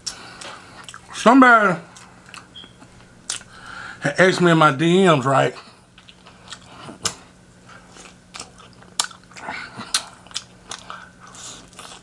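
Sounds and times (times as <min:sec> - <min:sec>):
crunchy chewing of fried chicken: 0:00.0 - 0:01.2, 0:01.8 - 0:03.7, 0:05.6 - 0:12.0.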